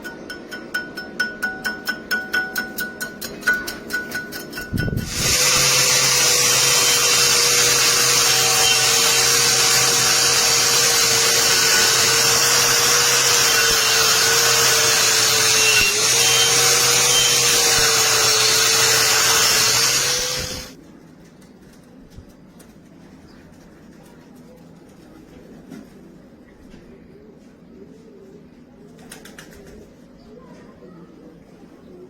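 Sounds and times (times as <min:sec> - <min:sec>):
electric power tool whining: 0:05.0 - 0:20.8.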